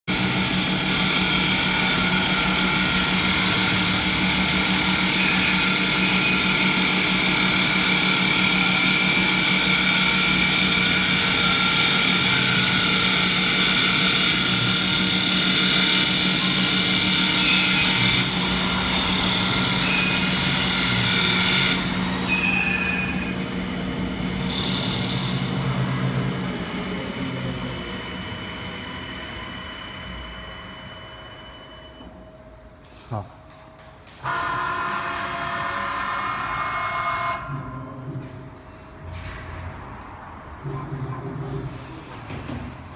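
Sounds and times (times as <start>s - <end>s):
cutters shaving wood: 0.1s - 22.9s, 24.4s - 25.9s
lathe motor hum: 0.1s - 30.6s.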